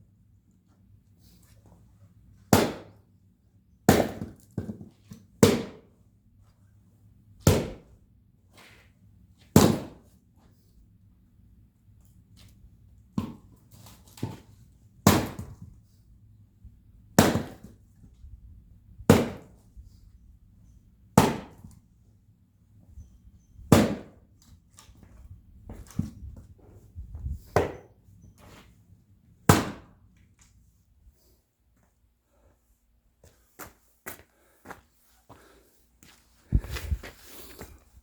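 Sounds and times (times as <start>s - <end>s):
axe chopping wood: 2.5s - 3.0s, 3.9s - 5.9s, 7.4s - 7.9s, 9.6s - 10.0s, 15.0s - 15.6s, 17.2s - 17.8s, 19.1s - 19.6s, 21.2s - 21.7s, 23.7s - 24.2s, 27.4s - 27.9s, 29.5s - 30.0s.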